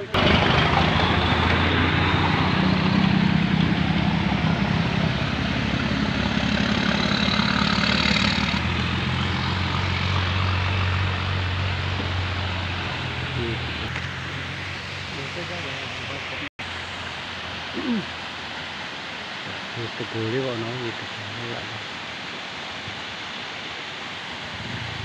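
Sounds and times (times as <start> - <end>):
loud rushing noise: 0.0 - 17.0
vehicle engine droning: 0.0 - 18.4.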